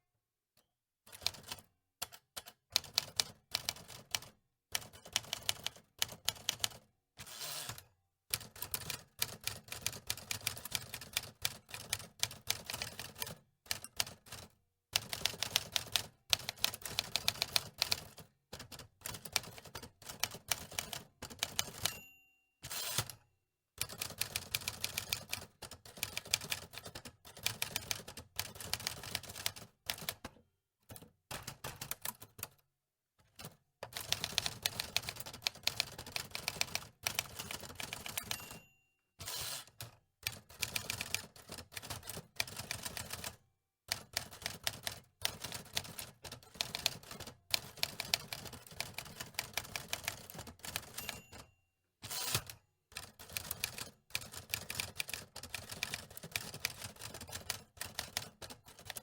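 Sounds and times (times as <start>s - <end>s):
typewriter keys clacking: 33.9s - 38.6s, 44.2s - 51.4s, 52.1s - 59.0s.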